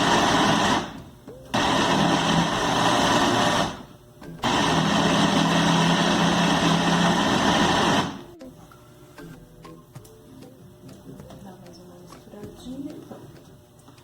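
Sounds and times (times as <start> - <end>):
blender motor hum: 0.0 - 8.4.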